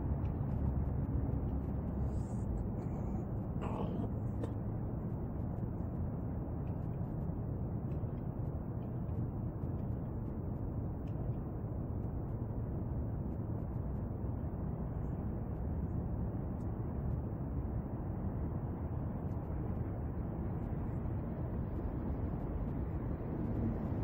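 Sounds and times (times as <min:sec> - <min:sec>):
low rumbling background noise: 0:00.0 - 0:24.0.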